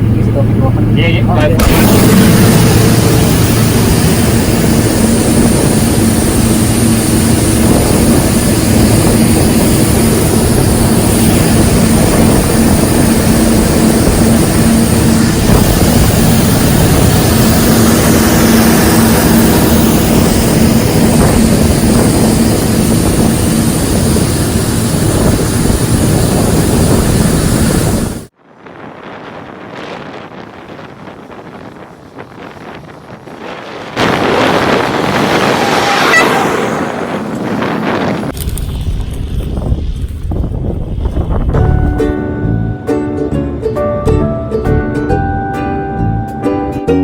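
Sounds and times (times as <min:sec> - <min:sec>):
low hum: 0:00.0 - 0:46.3
combine harvester engine drone: 0:00.0 - 0:47.0.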